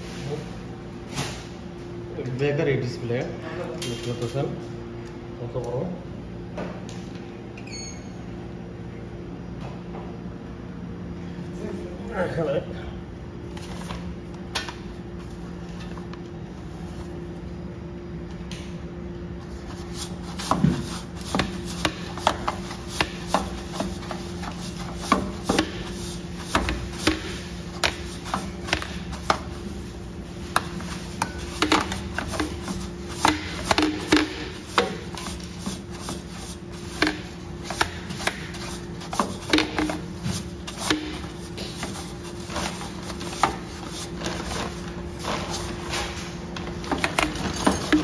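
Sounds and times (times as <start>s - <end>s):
steady low hum: 0.0s - 48.0s.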